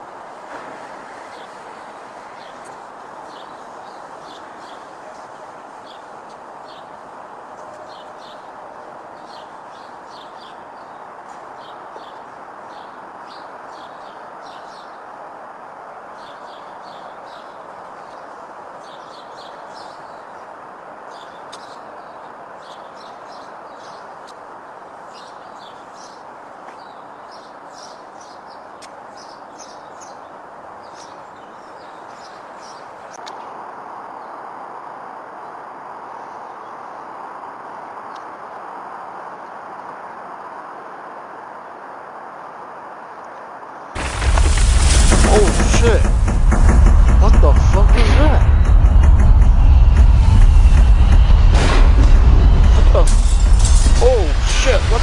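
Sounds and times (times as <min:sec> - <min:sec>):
outdoor background noise: 0:00.0 - 0:55.0
small birds chirping: 0:01.2 - 0:15.2, 0:16.1 - 0:34.4.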